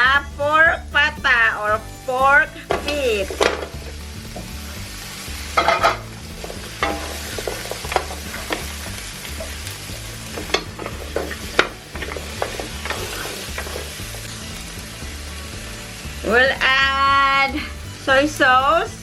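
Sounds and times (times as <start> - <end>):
meat sizzling in hot oil: 0.0 - 19.0
utensil knocking against pan: 2.7 - 4.6, 5.5 - 14.2.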